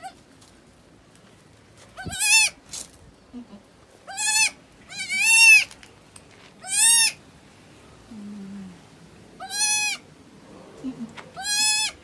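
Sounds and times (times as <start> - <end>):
goat kids bleating: 2.0 - 2.6, 3.4 - 5.7, 6.6 - 7.2, 9.4 - 10.0, 11.0 - 12.0.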